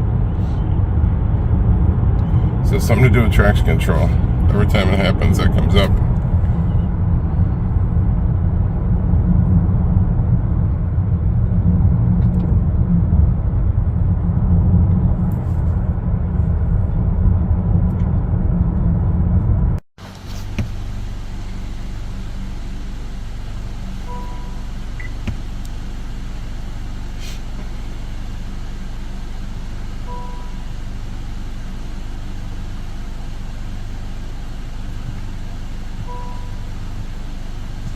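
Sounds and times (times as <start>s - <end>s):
car cabin road rumble: 0.0s - 37.9s
idling car hum: 0.0s - 37.9s
short faint beeps: 24.0s - 25.3s, 30.0s - 30.9s, 35.6s - 36.6s.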